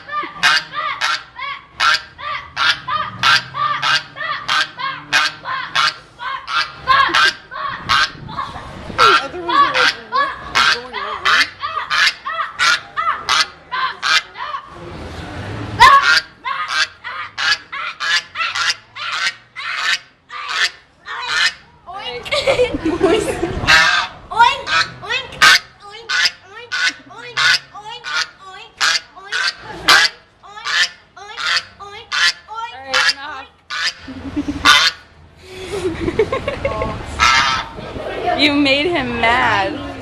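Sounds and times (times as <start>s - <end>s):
goose honking: 0.0s - 8.2s, 9.0s - 14.3s, 15.8s - 21.7s, 23.7s - 35.1s, 37.2s - 37.8s.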